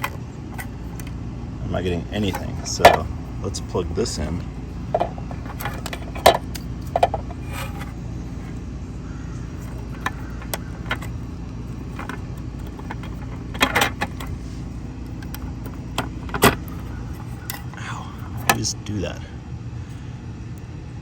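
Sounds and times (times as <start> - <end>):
low hum: 0.0 - 21.0
plastic clicks and rattles: 9.6 - 11.2, 11.8 - 14.3.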